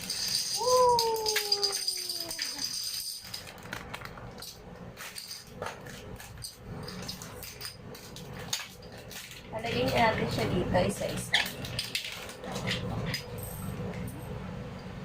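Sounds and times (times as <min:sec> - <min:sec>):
plastic toy pieces clicking: 0:00.0 - 0:10.0
person calling woo: 0:00.6 - 0:02.8.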